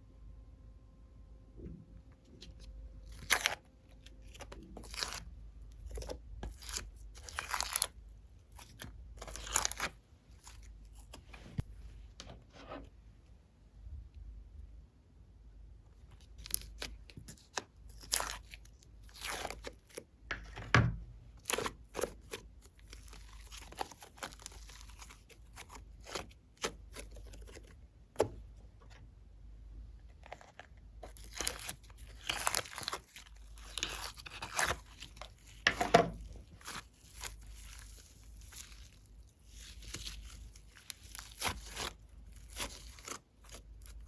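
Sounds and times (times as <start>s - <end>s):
hands squishing sticky slime: 4.2s - 11.7s, 16.0s - 28.4s, 30.4s - 44.0s.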